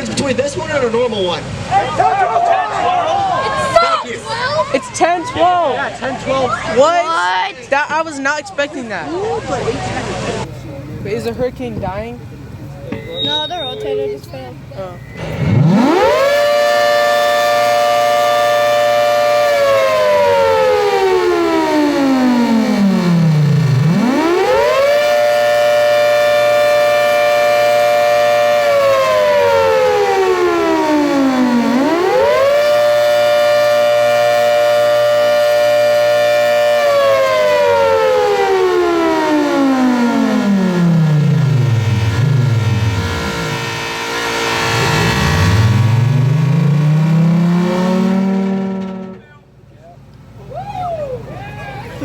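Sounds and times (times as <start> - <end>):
warning siren wailing: 12.9 - 49.2.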